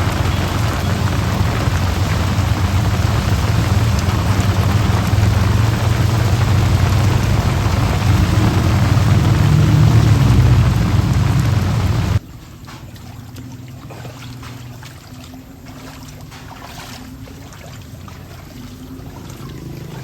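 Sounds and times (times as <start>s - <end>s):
heavy rain pouring: 0.0s - 12.2s.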